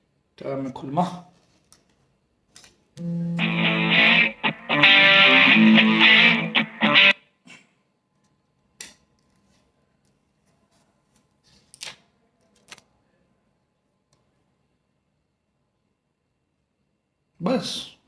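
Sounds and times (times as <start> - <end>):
distorted electric guitar music: 3.0 - 7.2.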